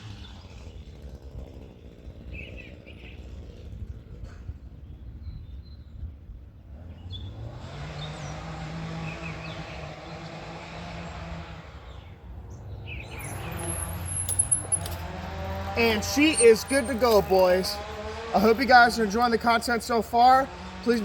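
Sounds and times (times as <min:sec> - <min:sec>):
electric bike motor hum: 0:07.4 - 0:19.4
bike tire rolling: 0:12.5 - 0:20.2.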